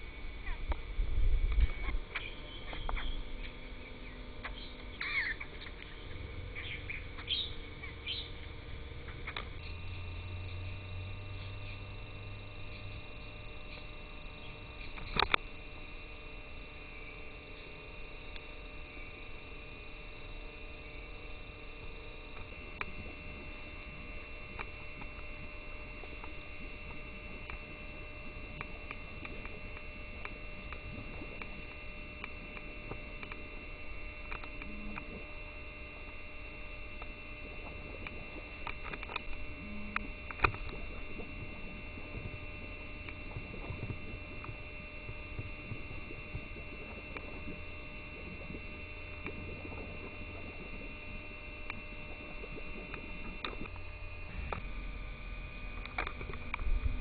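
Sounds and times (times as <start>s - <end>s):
steady hum of held tones: 0.0s - 57.0s
faint clicks: 9.0s - 9.7s, 12.6s - 15.6s, 17.4s - 35.3s, 36.9s - 53.9s.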